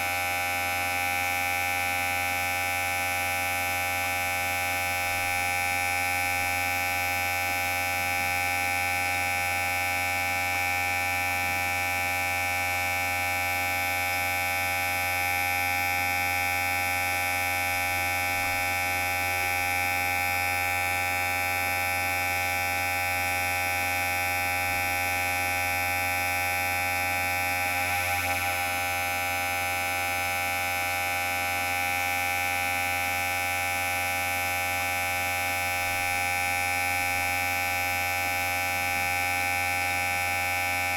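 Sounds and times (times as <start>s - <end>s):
electric hair clipper buzzing: 3.7s - 8.8s, 13.7s - 40.9s.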